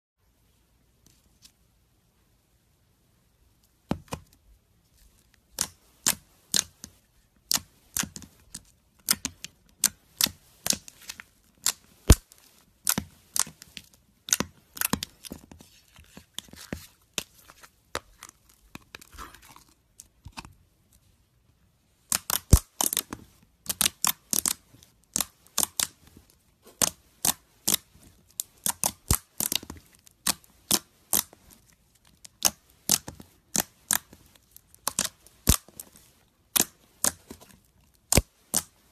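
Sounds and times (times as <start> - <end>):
slime crackling and popping: 22.1 - 23.1, 23.7 - 26.0, 26.8 - 35.8, 38.1 - 38.7.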